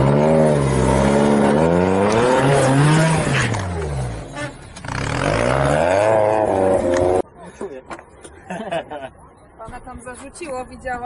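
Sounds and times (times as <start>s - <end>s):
truck engine revving: 0.0s - 7.3s.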